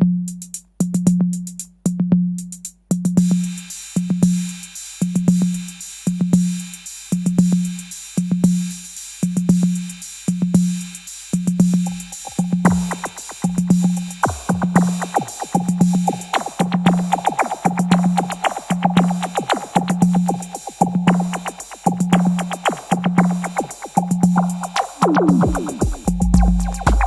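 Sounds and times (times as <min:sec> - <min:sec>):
hi-hat ticks: 0:00.3 - 0:27.0
boomy bass drum: 0:11.5 - 0:27.0.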